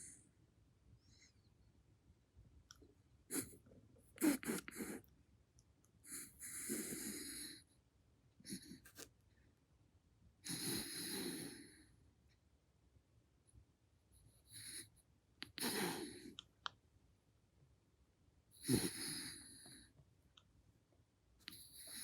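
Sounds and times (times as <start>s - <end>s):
raccoon snoring: 4.2s - 5.0s, 6.1s - 7.6s, 10.4s - 11.8s, 14.5s - 16.4s, 18.6s - 19.8s, 21.5s - 22.0s.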